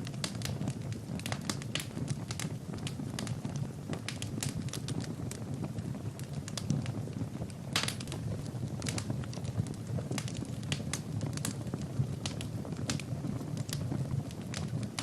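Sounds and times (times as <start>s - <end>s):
fire crackling and popping: 0.0s - 15.0s
low rumble of flames: 0.0s - 15.0s.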